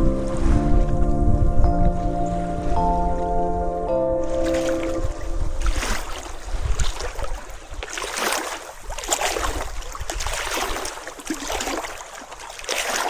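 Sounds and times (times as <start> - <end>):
water splashing and rushing: 0.0 - 13.0.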